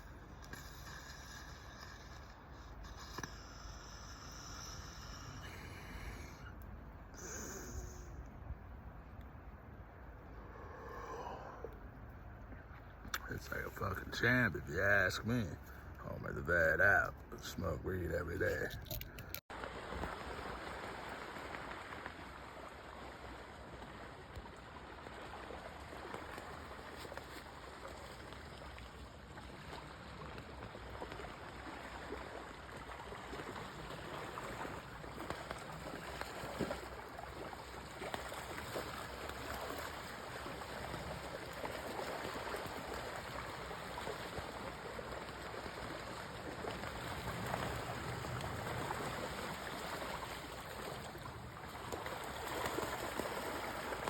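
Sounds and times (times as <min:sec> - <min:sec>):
river water running over rocks: 0:19.5 - 0:54.0.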